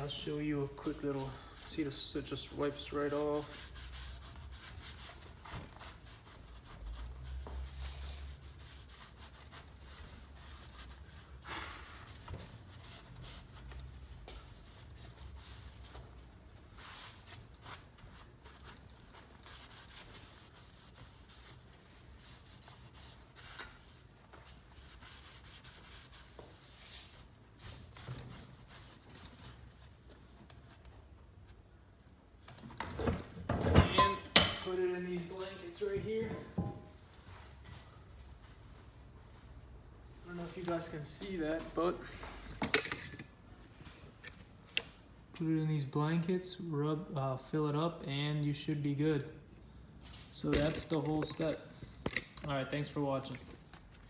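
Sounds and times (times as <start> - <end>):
cloth rubbing and rustling: 0.0 - 31.6, 33.9 - 42.4.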